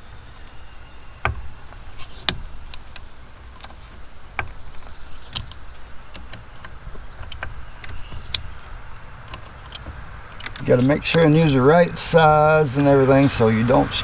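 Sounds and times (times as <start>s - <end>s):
sharp metal clicks and taps: 1.2s - 11.6s.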